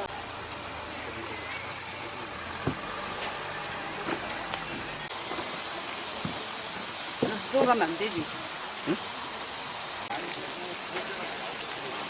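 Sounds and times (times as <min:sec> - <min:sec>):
cicada chorus buzzing: 0:00.0 - 0:12.0
faint knocks: 0:02.6 - 0:05.1.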